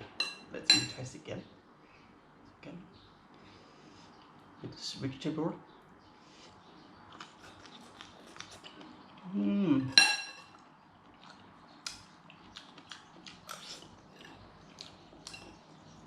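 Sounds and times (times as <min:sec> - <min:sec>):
cutlery clinking on dishes: 0:00.0 - 0:01.0, 0:09.9 - 0:10.6, 0:15.2 - 0:15.6.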